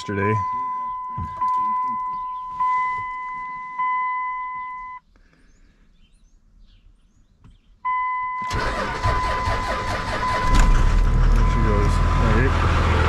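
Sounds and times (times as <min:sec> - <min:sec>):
dashboard warning tone: 0:00.0 - 0:05.0, 0:07.9 - 0:10.7
faint bird chirps: 0:00.4 - 0:07.9
truck engine starting: 0:08.4 - 0:13.0.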